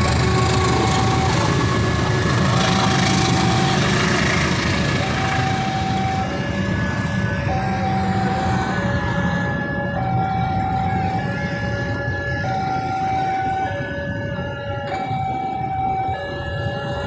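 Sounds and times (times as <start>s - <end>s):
train rumbling on rails: 0.0s - 17.0s
two-tone warning siren: 0.0s - 17.0s.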